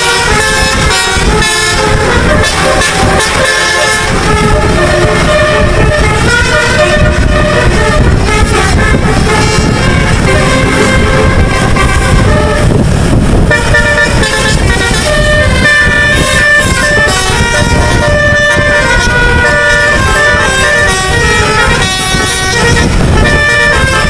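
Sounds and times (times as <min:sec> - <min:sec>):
musical air horn playing tune: 0:00.0 - 0:24.0
low rumble: 0:01.2 - 0:18.4.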